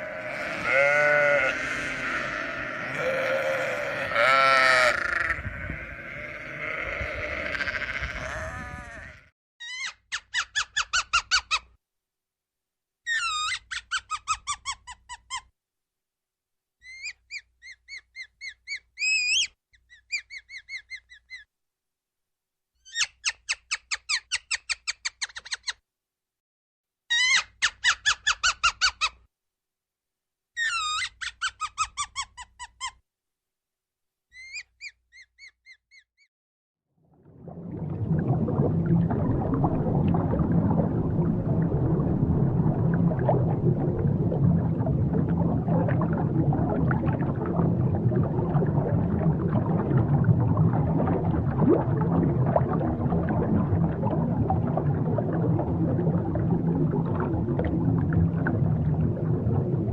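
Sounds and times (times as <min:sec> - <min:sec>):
bleating call: 0:00.0 - 0:09.3
animal squeaky chirping: 0:09.6 - 0:11.7, 0:13.1 - 0:15.5, 0:16.8 - 0:21.5, 0:22.8 - 0:25.8, 0:27.1 - 0:29.2, 0:30.6 - 0:33.0, 0:34.3 - 0:36.3.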